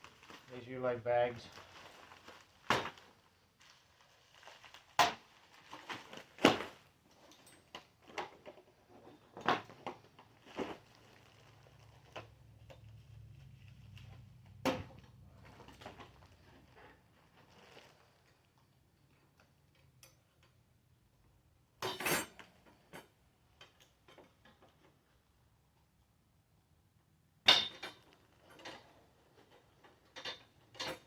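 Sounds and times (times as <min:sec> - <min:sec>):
knocks and clacks of handling parts: 0:14.0 - 0:16.4.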